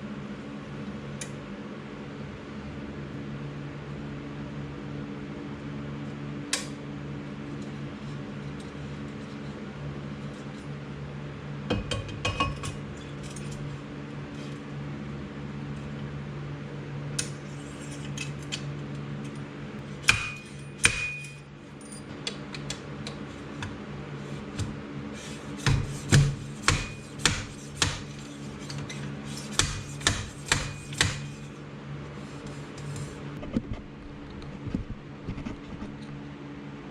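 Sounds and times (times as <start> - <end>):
steady low hum: 0.0 - 36.9
metal tools clinking: 12.6 - 13.7, 20.4 - 22.1
sharp knocks: 25.6 - 28.1, 29.5 - 31.3.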